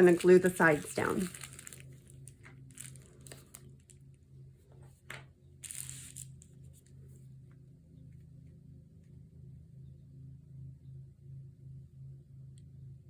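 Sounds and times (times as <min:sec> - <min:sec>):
envelope crinkling and rustling: 0:00.0 - 0:04.0, 0:04.9 - 0:06.9
faint low hum: 0:00.0 - 0:13.0.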